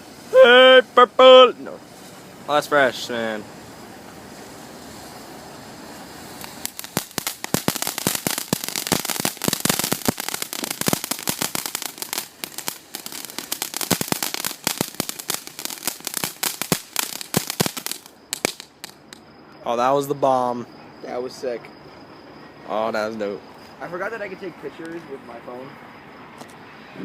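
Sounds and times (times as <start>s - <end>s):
firework hissing: 0.0s - 19.2s
firework pops and crackles: 4.1s - 19.2s.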